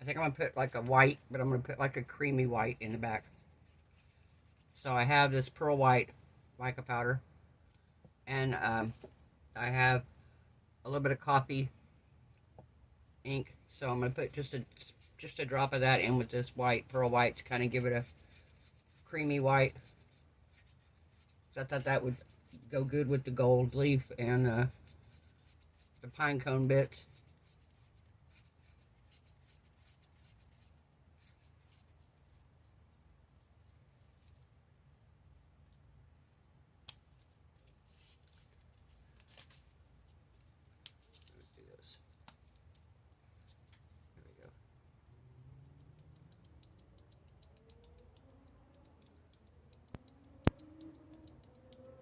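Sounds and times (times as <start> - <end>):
faint room hum: 0.0 - 52.0
sharp clicks: 45.6 - 52.0.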